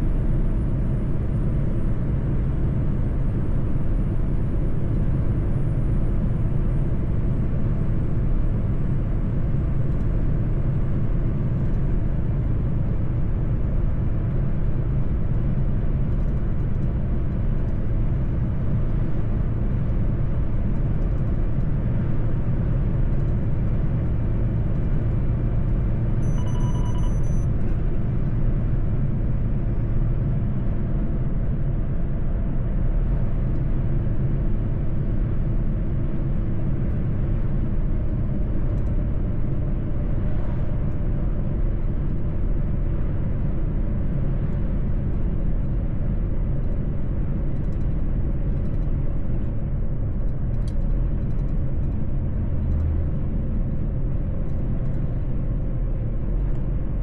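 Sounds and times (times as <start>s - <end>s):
truck engine and road drone: 0.0s - 57.0s
short electronic beep: 26.2s - 27.6s.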